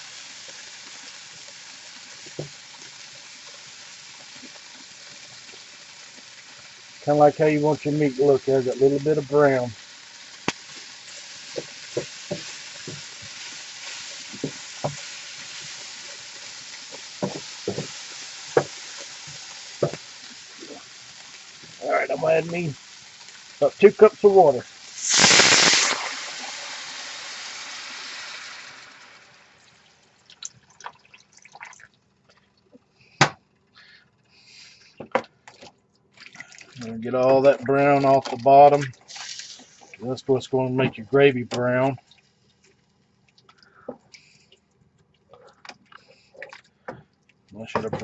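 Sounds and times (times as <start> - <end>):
meat sizzling in a pan: 0.0 - 31.7, 37.2 - 40.1.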